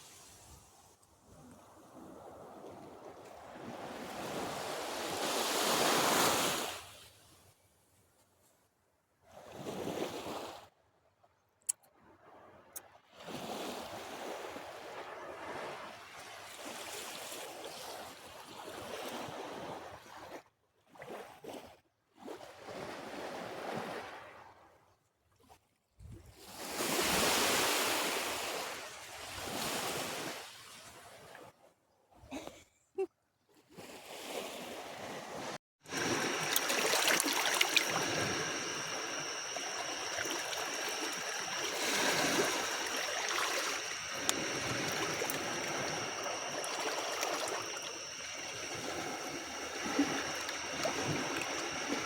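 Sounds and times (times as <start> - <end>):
waves washing in and receding: 1.9 - 7.0, 35.9 - 52.0.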